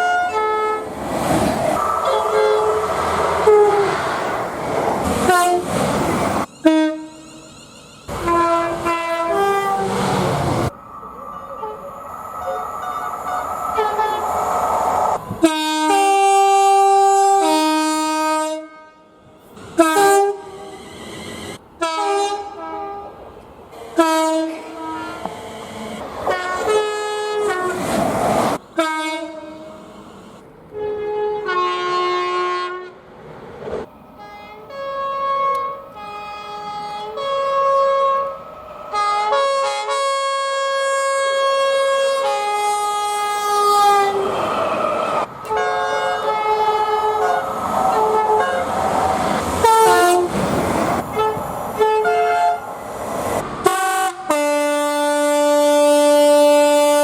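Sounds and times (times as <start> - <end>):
two-tone train horn blasts: 0.0 - 0.8, 1.8 - 4.0, 5.3 - 5.7, 6.6 - 7.5, 8.1 - 10.4, 11.4 - 14.4, 15.3 - 20.7, 21.8 - 23.2, 23.9 - 25.3, 26.2 - 27.8, 28.7 - 33.0, 34.2 - 44.4, 45.4 - 48.8, 49.6 - 50.4, 51.1 - 52.7, 53.6 - 57.0
rushing noise: 0.8 - 6.7, 8.1 - 15.6, 44.1 - 53.7.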